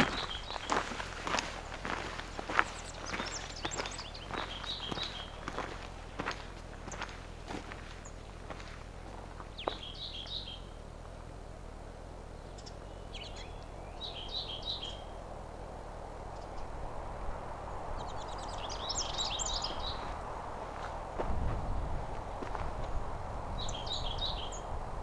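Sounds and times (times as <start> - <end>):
songbird trilling: 0.0 - 8.6, 9.3 - 10.8, 12.3 - 15.2, 18.0 - 20.2.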